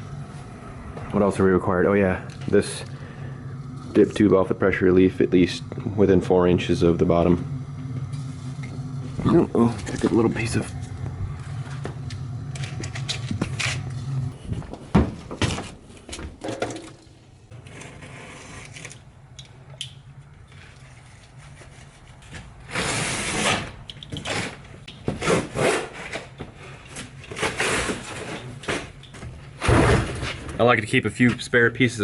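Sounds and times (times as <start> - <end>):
objects scraping and rubbing: 0.0 - 14.6, 17.4 - 19.2, 20.2 - 29.0.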